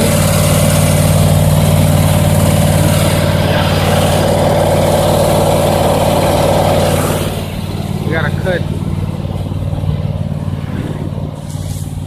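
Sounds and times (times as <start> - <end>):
lawn mower engine running: 0.0 - 12.0.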